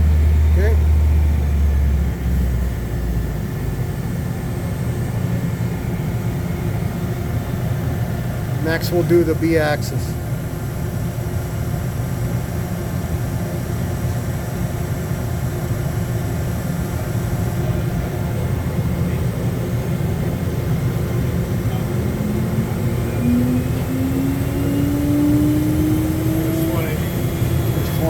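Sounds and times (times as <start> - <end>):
lathe humming and hissing: 16.4 - 28.0
spindle motor rising whine: 19.4 - 28.0.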